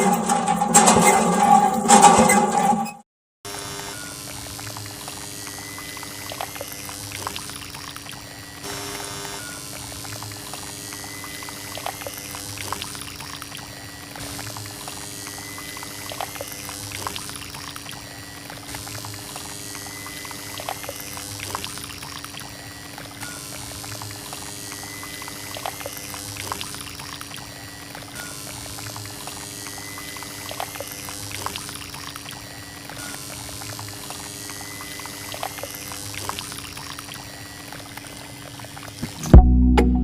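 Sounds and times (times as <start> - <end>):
water pouring and splashing: 4.2 - 39.2.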